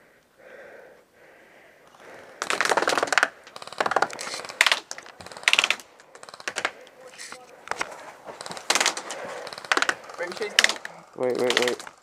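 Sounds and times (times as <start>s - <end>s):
airsoft gun firing full-auto: 2.4s - 6.8s, 8.4s - 12.0s.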